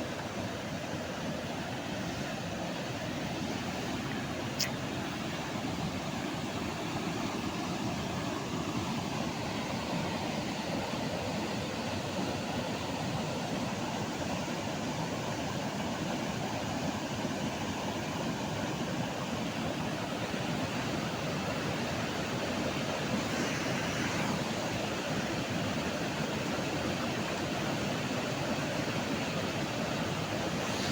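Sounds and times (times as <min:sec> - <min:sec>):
floodwater rushing: 0:30.0 - 0:30.9.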